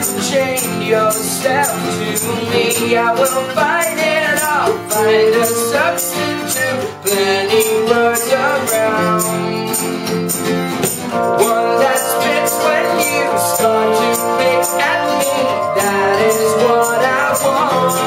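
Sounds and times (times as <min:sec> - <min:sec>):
guitar: 0:00.0 - 0:18.0
tambourine-like percussion beat: 0:00.0 - 0:18.0
person singing: 0:11.2 - 0:18.0.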